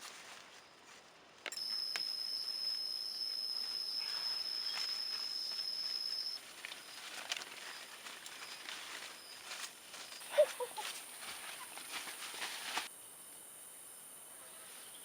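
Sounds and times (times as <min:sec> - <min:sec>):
high-pitched insect whine: 0:01.5 - 0:15.0
light clicks and rustles: 0:06.4 - 0:10.2.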